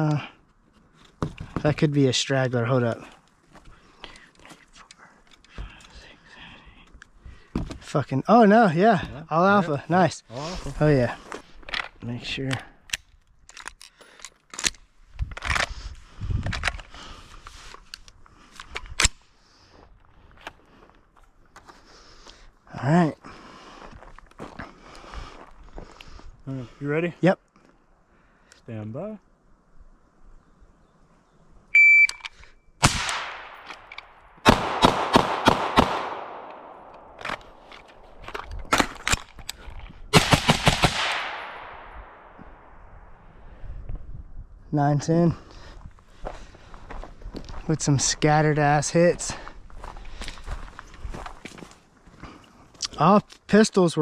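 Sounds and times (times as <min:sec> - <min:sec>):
shot timer beep: 0:31.8 - 0:32.2
gunshots with echoing tail: 0:32.8 - 0:33.7, 0:34.4 - 0:37.2, 0:40.2 - 0:42.7.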